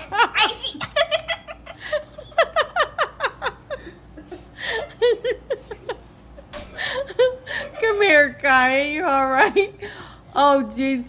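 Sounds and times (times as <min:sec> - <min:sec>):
person laughing: 0:00.0 - 0:06.1.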